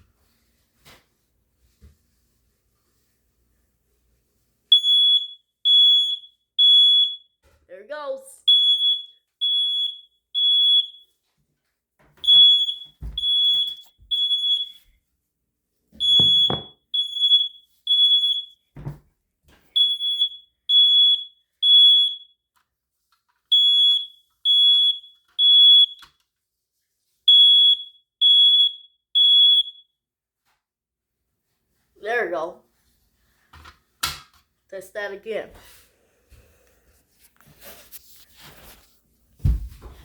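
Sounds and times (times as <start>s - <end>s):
smoke alarm beeping: 4.7s - 7.4s, 8.5s - 11.2s, 12.2s - 14.9s, 16.0s - 18.7s, 19.7s - 22.5s, 23.5s - 26.2s, 27.3s - 30.0s.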